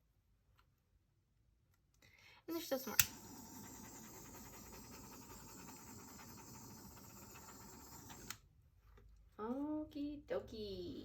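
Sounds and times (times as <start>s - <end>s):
butane torch hissing: 2.5s - 8.4s.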